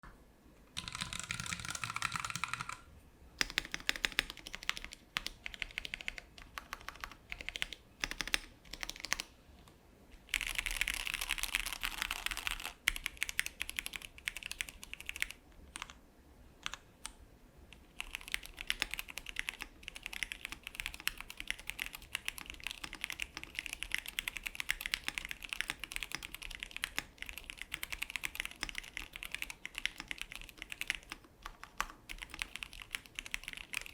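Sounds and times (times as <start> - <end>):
mechanical keyboard typing: 0.8 - 9.3, 10.3 - 16.0, 16.6 - 17.2, 17.8 - 33.9.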